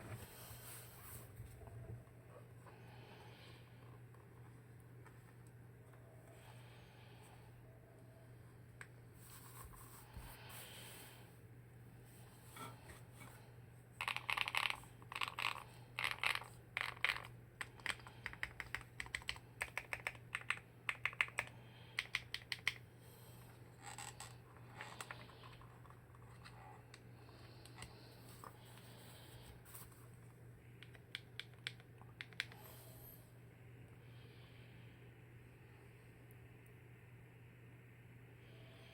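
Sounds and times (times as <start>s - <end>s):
mechanical keyboard typing: 14.0s - 22.8s.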